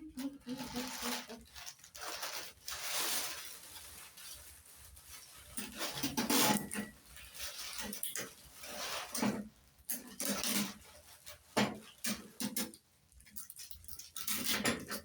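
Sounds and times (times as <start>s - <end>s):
gift wrapping rustling: 0.1s - 9.2s.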